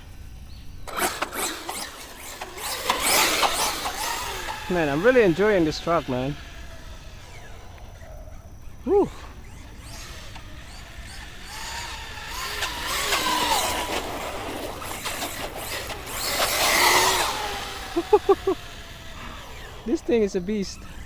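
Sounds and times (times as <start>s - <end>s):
rc truck electric motor whining: 0.0s - 21.0s.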